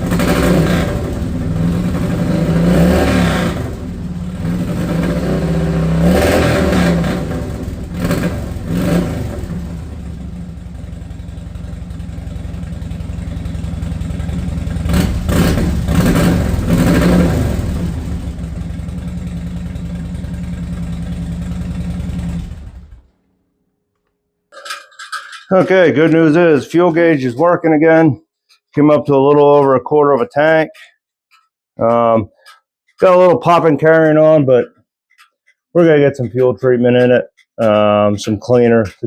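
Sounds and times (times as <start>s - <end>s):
motorcycle engine revving: 0.0s - 23.1s.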